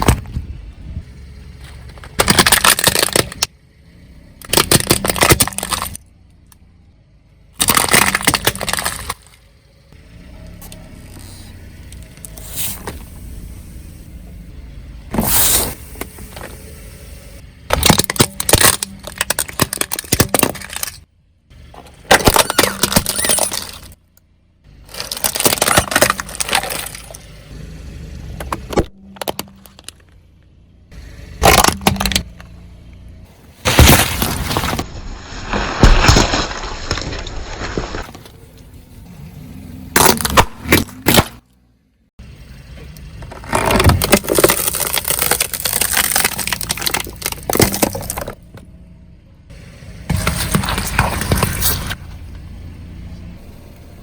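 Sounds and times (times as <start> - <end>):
car engine running low: 0.0 - 54.0
tyre crushing objects: 1.6 - 3.5, 4.4 - 6.0, 7.6 - 9.4, 17.7 - 21.0, 21.8 - 24.0, 24.9 - 27.2, 31.4 - 32.4, 33.6 - 38.7, 39.9 - 41.5, 43.3 - 48.5, 50.0 - 52.0.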